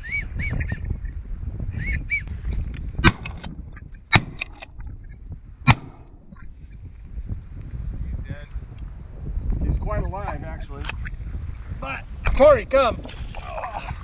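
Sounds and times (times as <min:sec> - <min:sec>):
shotgun shots: 0:03.0 - 0:03.5, 0:04.1 - 0:04.6, 0:05.7 - 0:06.3.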